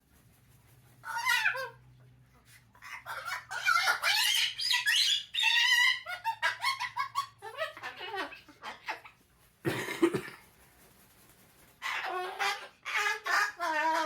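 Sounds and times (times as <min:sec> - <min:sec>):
cockatoo chattering calls: 0:11.8 - 0:14.0.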